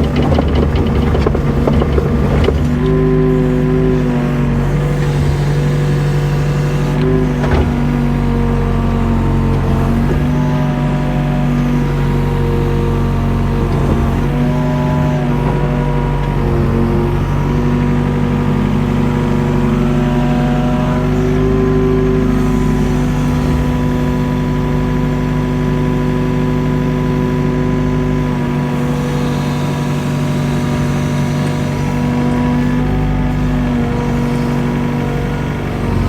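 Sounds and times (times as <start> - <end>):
excavator diesel engine running: 0.0 - 36.0.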